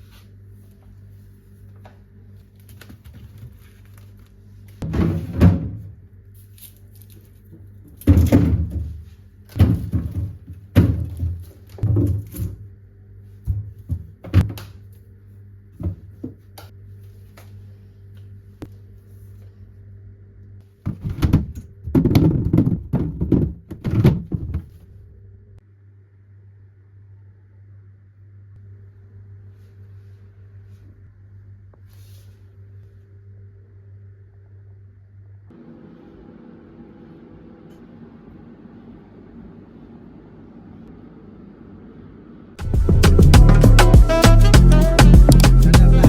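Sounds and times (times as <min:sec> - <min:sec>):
household objects thunking: 0:04.8 - 0:05.9, 0:08.0 - 0:12.6, 0:20.8 - 0:24.8.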